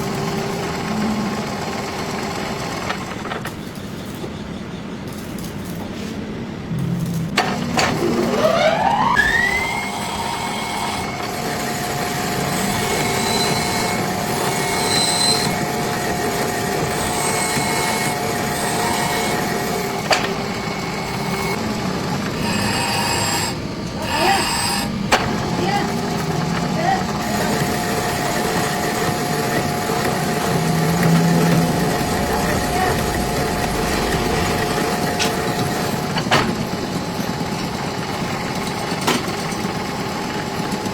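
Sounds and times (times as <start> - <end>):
electric motor whining: 7.4 - 36.3.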